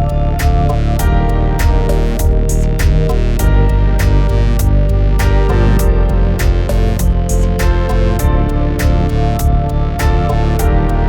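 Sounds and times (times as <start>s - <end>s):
electronic music with synth and guitar: 0.0s - 11.0s.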